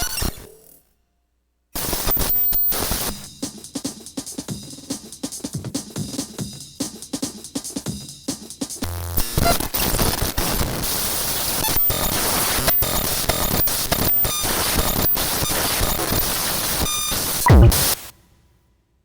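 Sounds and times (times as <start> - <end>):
high beeps: 17.5 - 17.8
low hum: 17.5 - 17.8.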